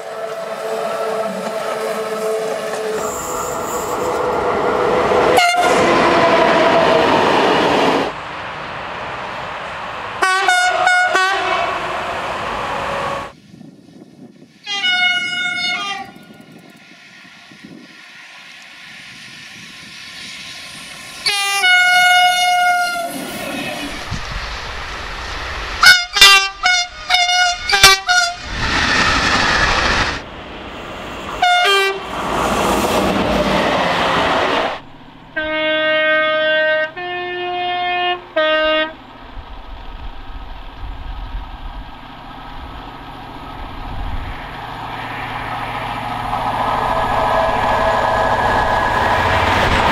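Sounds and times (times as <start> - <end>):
train horn blasts: 0.0 - 4.1, 5.3 - 6.7, 10.2 - 12.0, 14.6 - 16.4, 21.2 - 23.2, 25.8 - 28.4, 31.4 - 32.1, 35.4 - 39.0
two-tone train horn: 0.0 - 4.2, 5.3 - 6.7, 10.2 - 12.0, 14.6 - 16.4, 21.2 - 23.2, 25.8 - 28.4, 31.4 - 32.1, 35.4 - 39.0
trains rushing past: 0.0 - 37.4, 38.1 - 49.9
short train horn toots: 5.4 - 5.9, 10.2 - 12.0, 14.7 - 16.2, 21.3 - 23.2, 25.8 - 28.4, 31.4 - 32.0, 35.4 - 39.0.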